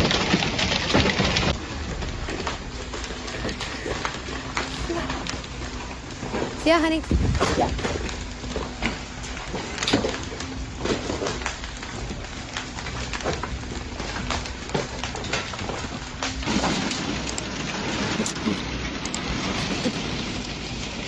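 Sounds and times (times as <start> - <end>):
hailstones cracking on hard surfaces: 0.0 - 21.0
hiss of falling hail: 11.4 - 21.0.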